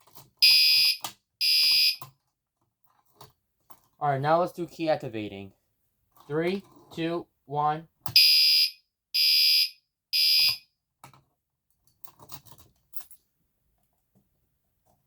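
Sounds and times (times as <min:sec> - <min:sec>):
fire alarm horn blasts: 0:00.4 - 0:02.0, 0:08.2 - 0:10.6.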